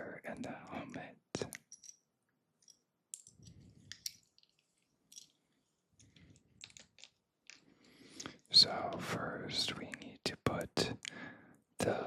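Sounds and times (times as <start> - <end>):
small plastic pieces clicking: 2.6 - 5.4, 6.0 - 7.6.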